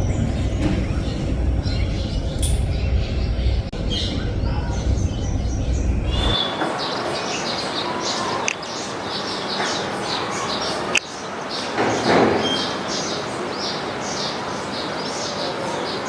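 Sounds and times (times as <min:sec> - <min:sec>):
low rumble: 0:00.0 - 0:06.4
birds chirping and calling: 0:00.0 - 0:16.0.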